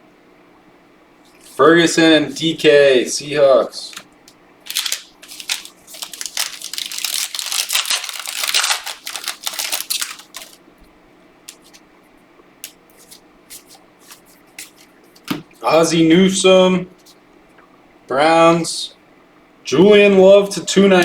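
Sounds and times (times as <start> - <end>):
plastic wrapper crinkling and tearing: 4.7 - 10.6
cards clicking when handled: 11.5 - 11.8, 12.6 - 15.4.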